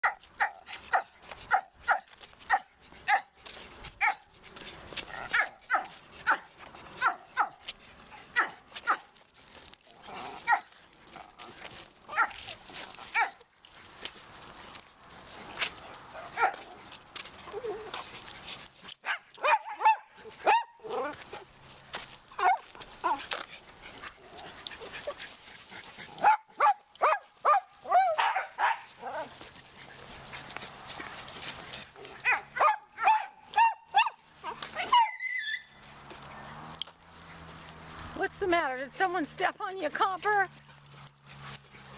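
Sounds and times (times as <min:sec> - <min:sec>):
small dog yelping: 0:00.0 - 0:03.3, 0:05.1 - 0:07.6, 0:08.3 - 0:09.0, 0:10.4 - 0:10.7, 0:12.1 - 0:12.4, 0:13.2 - 0:13.4, 0:16.2 - 0:16.7, 0:19.0 - 0:21.4, 0:22.4 - 0:23.3, 0:26.2 - 0:29.4, 0:32.2 - 0:36.5
dogs barking: 0:00.0 - 0:03.4, 0:04.0 - 0:04.3, 0:05.1 - 0:07.6, 0:08.2 - 0:09.1, 0:10.3 - 0:10.7, 0:12.1 - 0:12.4, 0:13.1 - 0:13.4, 0:16.0 - 0:16.8, 0:19.0 - 0:21.4, 0:22.4 - 0:23.2, 0:26.1 - 0:29.4, 0:31.9 - 0:38.2
dogs scuffling: 0:00.0 - 0:19.6, 0:20.2 - 0:41.9.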